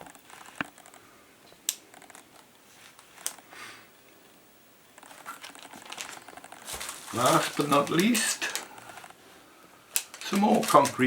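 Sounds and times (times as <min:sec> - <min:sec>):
sharp clicks of plastic parts: 0:00.0 - 0:03.4, 0:09.9 - 0:11.0
packaging rustling: 0:05.0 - 0:11.0.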